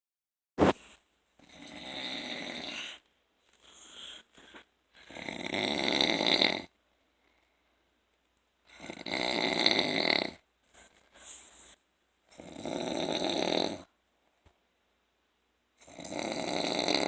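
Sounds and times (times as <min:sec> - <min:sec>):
man snoring: 0:01.4 - 0:03.0, 0:05.0 - 0:06.8, 0:08.7 - 0:10.4, 0:12.3 - 0:13.9, 0:15.8 - 0:17.0.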